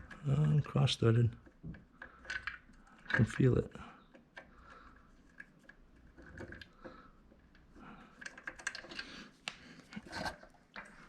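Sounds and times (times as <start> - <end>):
metal parts clicking and scraping: 8.1 - 9.3.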